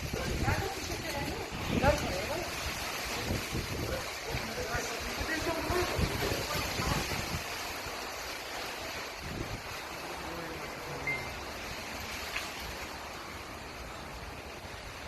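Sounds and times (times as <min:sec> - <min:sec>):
gusty wind buffeting microphone: 0:00.0 - 0:08.3, 0:09.1 - 0:10.0.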